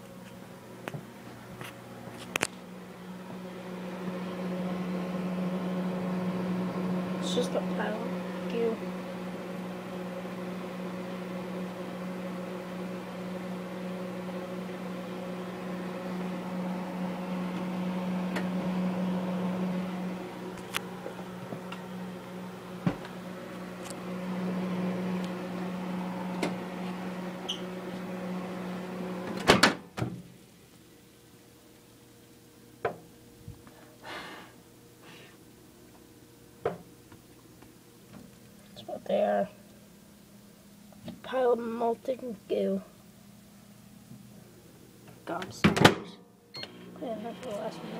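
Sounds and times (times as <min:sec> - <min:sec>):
microwave oven humming: 0:00.0 - 0:47.9
microwave click: 0:18.3 - 0:18.6, 0:26.3 - 0:26.7, 0:45.7 - 0:47.6.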